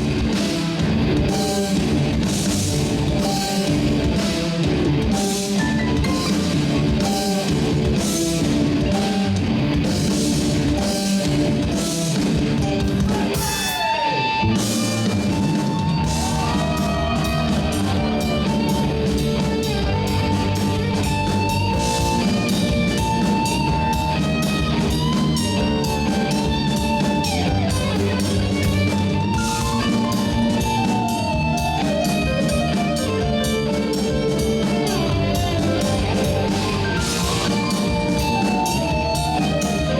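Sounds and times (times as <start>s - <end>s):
high held melody line: 0.0s - 39.9s
rock band playing: 0.0s - 39.9s.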